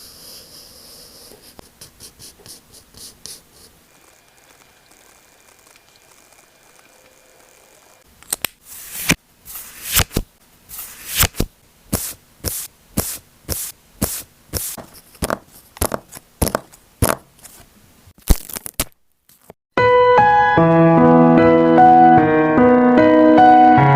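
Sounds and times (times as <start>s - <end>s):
crisp paper strokes: 8.6s - 11.5s.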